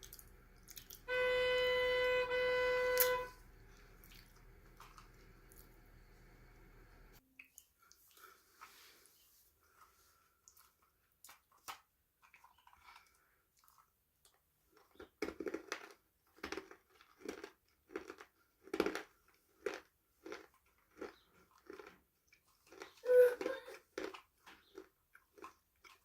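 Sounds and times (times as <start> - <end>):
person chewing crunchy food: 0.0 - 1.1, 3.6 - 5.8, 9.7 - 26.0.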